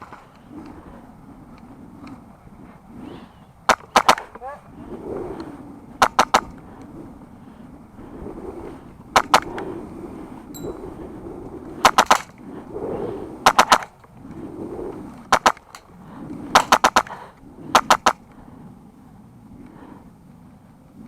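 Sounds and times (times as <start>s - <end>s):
airsoft rifle firing bursts: 3.7s - 4.3s, 16.6s - 17.2s.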